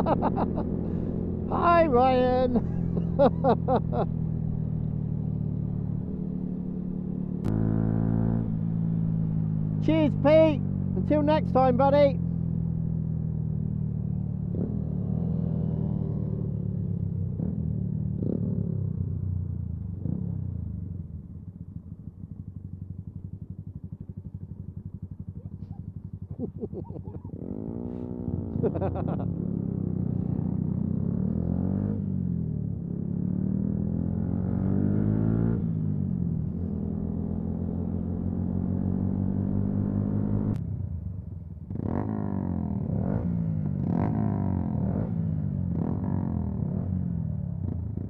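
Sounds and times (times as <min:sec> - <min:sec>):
motorcycle engine running: 0:00.0 - 0:48.0.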